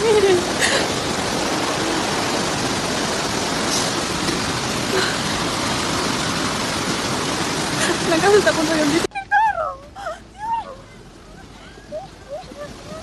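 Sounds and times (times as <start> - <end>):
floodwater rushing: 0.0 - 13.0.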